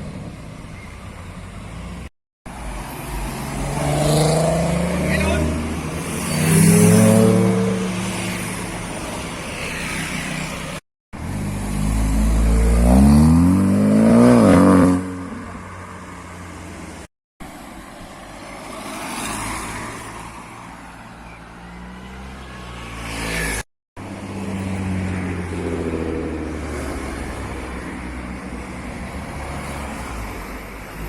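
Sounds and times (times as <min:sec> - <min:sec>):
car engines revving: 0:02.5 - 0:16.9.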